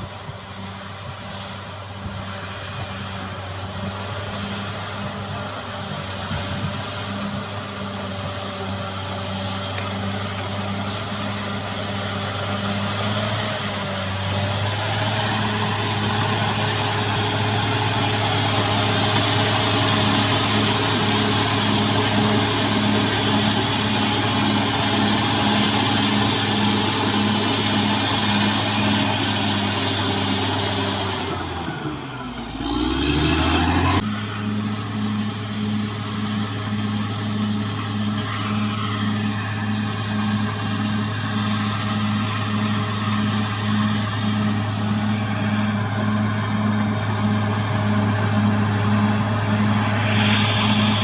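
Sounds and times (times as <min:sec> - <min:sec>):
bulldozer diesel engine running: 0:08.0 - 0:51.0
thin high whine: 0:44.8 - 0:51.0.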